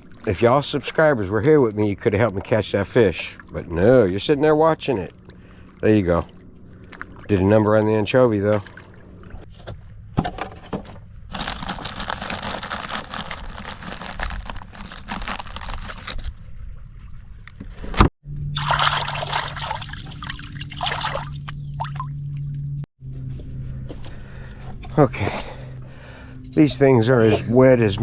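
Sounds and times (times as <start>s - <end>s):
low hum: 2.9s - 10.2s, 10.8s - 28.0s.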